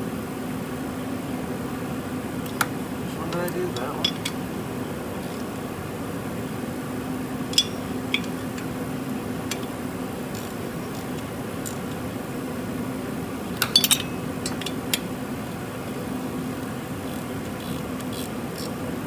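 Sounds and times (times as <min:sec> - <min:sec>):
steady low hum: 0:00.0 - 0:19.0
hand tools clinking on metal: 0:02.5 - 0:04.5, 0:07.5 - 0:08.7, 0:13.5 - 0:15.1.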